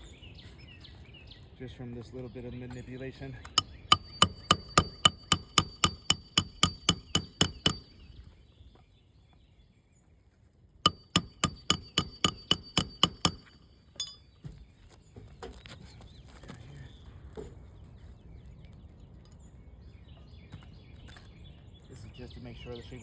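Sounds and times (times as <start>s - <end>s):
hammer striking roofing nails: 3.6s - 7.9s, 10.9s - 13.6s.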